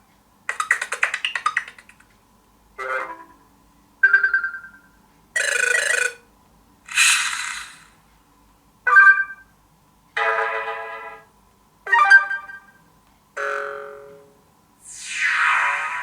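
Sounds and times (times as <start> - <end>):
hissing notification sounds: 14.8 - 16.0.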